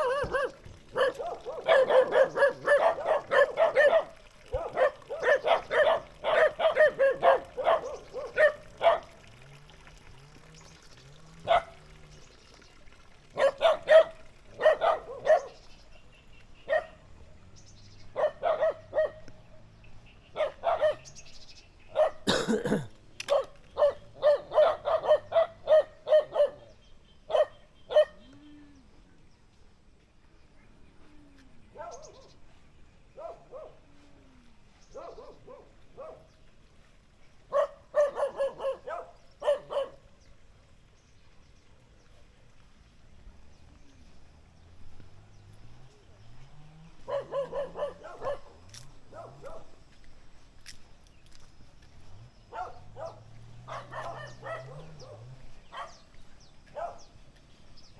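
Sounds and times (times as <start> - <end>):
dogs barking: 0.0 - 9.4, 11.4 - 12.1, 13.2 - 15.8, 16.6 - 17.2, 18.0 - 19.6, 20.3 - 28.3, 31.7 - 32.4, 33.1 - 33.9, 34.8 - 36.4, 37.4 - 40.2, 46.5 - 49.9, 52.4 - 57.9.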